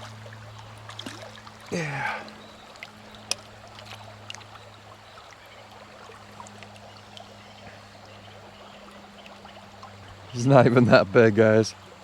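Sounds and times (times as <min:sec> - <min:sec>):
creek water running: 0:00.0 - 0:12.0.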